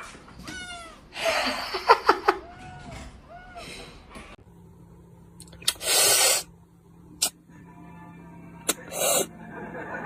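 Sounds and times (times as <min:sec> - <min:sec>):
short burst of hissing: 0:05.8 - 0:06.5.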